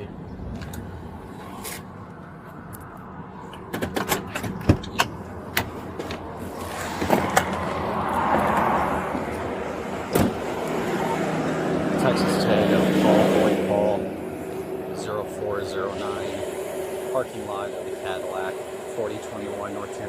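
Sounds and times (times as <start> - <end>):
running vehicle hum: 0.0 - 20.0
loud wash of noise: 7.2 - 20.0.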